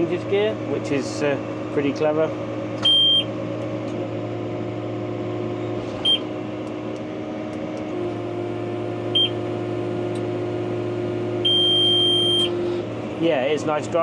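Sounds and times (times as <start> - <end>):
tractor engine running: 0.0 - 14.0.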